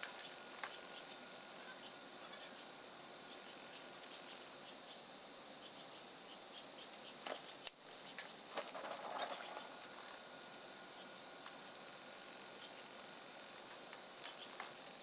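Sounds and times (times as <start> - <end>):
wood fire crackling: 7.2 - 15.0.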